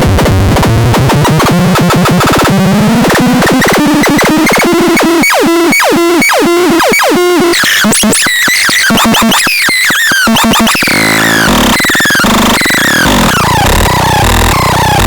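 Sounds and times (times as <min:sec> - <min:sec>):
synthesizer blips and zaps: 0:00.0 - 0:15.0
synthesizer buzzing with low pulse: 0:10.3 - 0:15.0.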